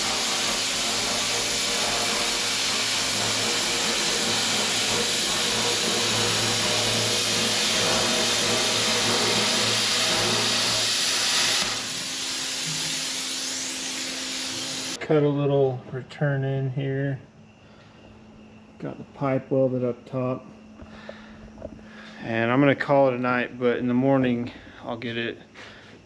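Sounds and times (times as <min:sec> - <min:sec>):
plasma cutter hissing: 0:00.0 - 0:15.0.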